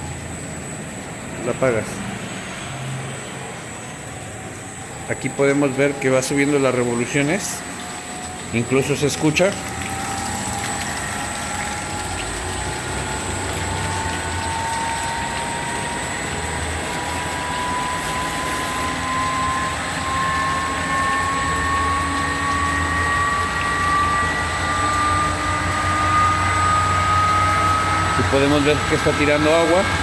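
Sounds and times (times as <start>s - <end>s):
machine hum: 0.0s - 30.0s
motor whine rising in pitch: 0.0s - 30.0s
high whistle: 13.6s - 29.9s.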